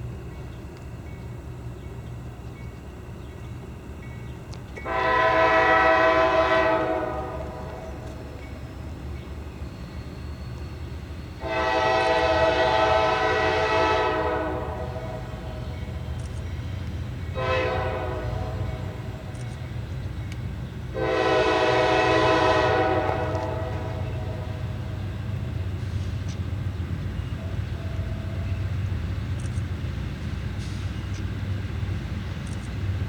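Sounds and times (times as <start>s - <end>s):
low rumble of passing train: 0.0s - 33.0s
locomotive air horn blasts: 4.8s - 8.0s, 11.4s - 15.6s, 17.4s - 19.1s, 20.9s - 24.7s.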